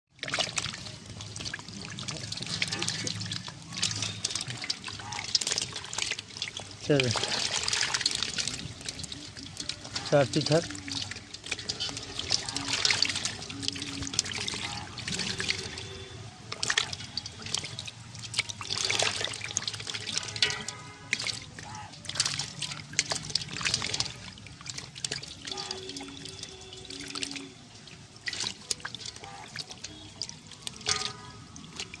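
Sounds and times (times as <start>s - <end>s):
water splashing and trickling: 0.0s - 32.0s.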